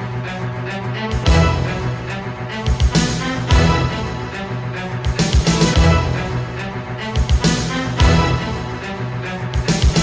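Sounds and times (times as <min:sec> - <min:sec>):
instrumental music with beat: 0:00.0 - 0:10.0.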